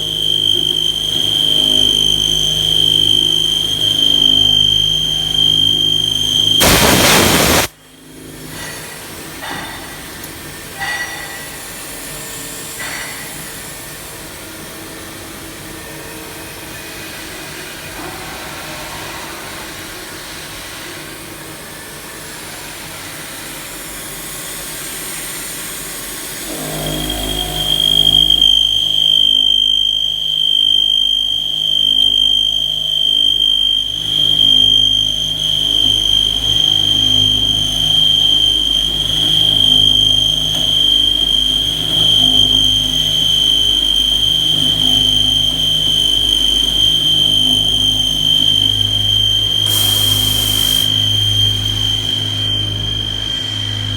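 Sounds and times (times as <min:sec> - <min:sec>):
high-pitched whine: 0:00.0 - 0:07.7, 0:33.9 - 0:53.9
milling machine cutting: 0:06.6 - 0:07.7, 0:49.4 - 0:52.1.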